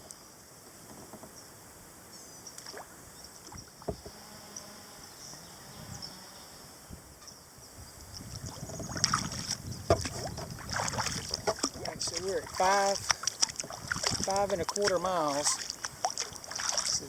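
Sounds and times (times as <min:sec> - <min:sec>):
water drips and splashes: 0:08.2 - 0:17.0
paddle strokes in water: 0:08.3 - 0:17.0.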